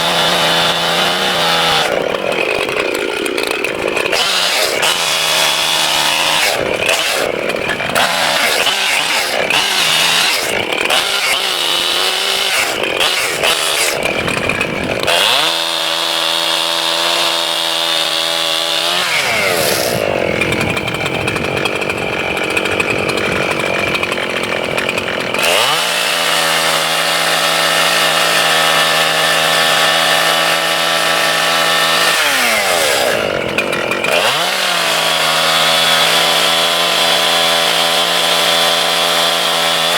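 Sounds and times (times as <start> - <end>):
chainsaw cutting log: 0.0 - 39.9.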